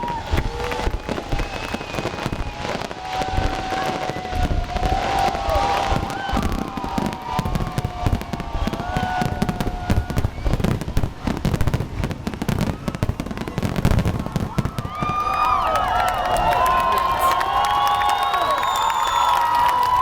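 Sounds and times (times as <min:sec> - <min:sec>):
fireworks bangs and crackling: 0:00.0 - 0:20.0.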